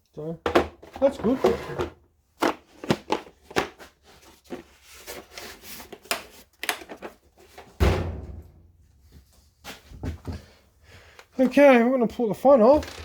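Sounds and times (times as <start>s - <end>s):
heavy thump: 7.8s - 8.7s.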